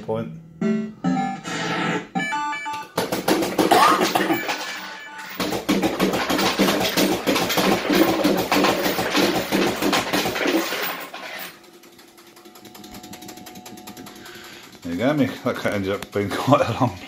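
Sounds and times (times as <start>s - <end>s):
machine hum with faint tones: 0.0s - 17.0s
fruit machine electronic effects: 0.4s - 6.3s
rapid even clatter: 3.0s - 16.9s
ticking: 11.6s - 17.0s.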